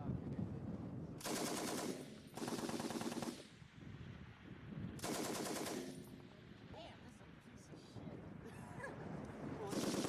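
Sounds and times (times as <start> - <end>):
machine gun bursts: 1.2 - 3.3, 5.0 - 6.0, 9.7 - 10.0.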